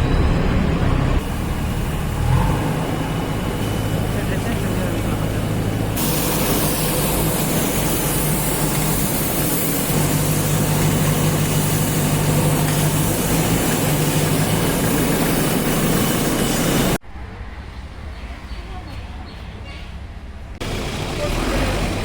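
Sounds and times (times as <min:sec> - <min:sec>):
diesel engine running: 0:00.0 - 0:17.0, 0:20.6 - 0:22.0
steady hiss: 0:03.6 - 0:17.0.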